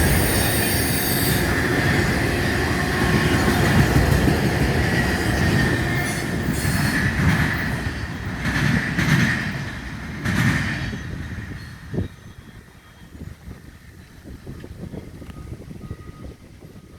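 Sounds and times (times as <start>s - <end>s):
high wheel squeal: 0.0s - 4.1s
steel wheels rumbling on rails: 0.0s - 16.9s.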